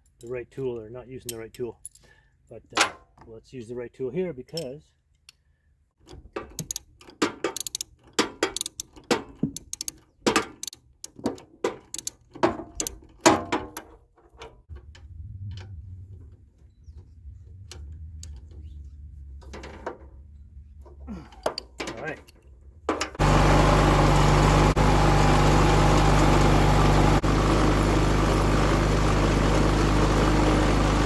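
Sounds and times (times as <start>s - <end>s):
ratchet wrench clicking: 7.6s - 9.0s, 11.9s - 12.2s.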